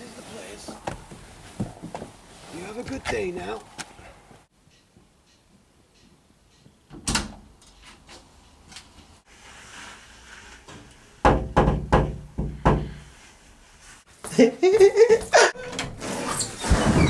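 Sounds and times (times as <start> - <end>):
quick knocks on a door: 11.3 - 12.9.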